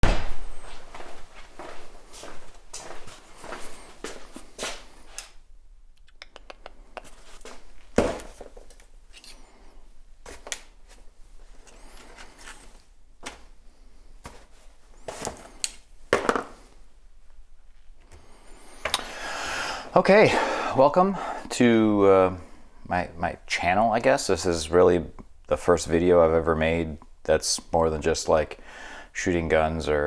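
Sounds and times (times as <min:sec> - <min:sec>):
objects being handled: 0:14.2 - 0:16.8.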